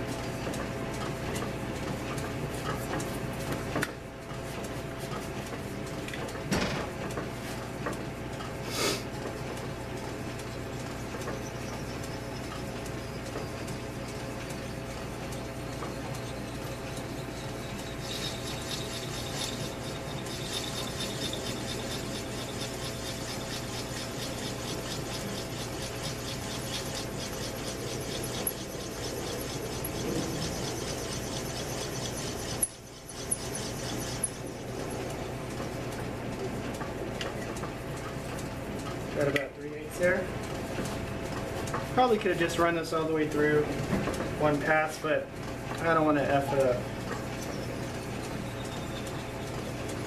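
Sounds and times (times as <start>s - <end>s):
lathe motor hum: 9.3s - 37.9s, 45.3s - 50.0s
high squealing cutting whine: 10.5s - 35.4s, 46.0s - 50.0s.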